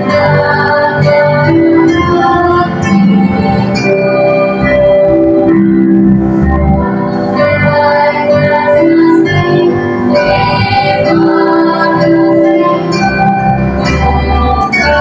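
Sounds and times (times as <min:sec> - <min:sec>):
choir singing a slow hymn: 0:00.0 - 0:03.9, 0:07.7 - 0:13.1, 0:13.9 - 0:15.0
instrumental accompaniment: 0:00.0 - 0:15.0.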